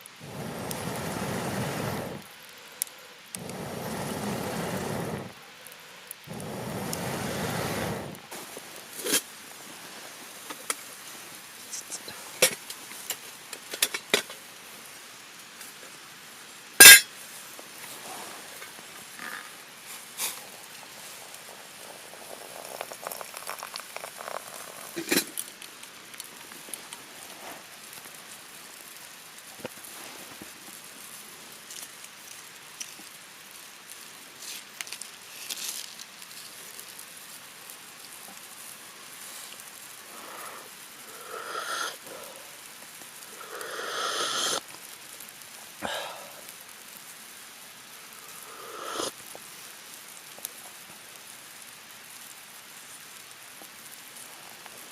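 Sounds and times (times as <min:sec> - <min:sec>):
mountain stream rushing: 0:00.0 - 0:02.3, 0:03.4 - 0:05.4
campfire crackling and popping: 0:00.0 - 0:54.9.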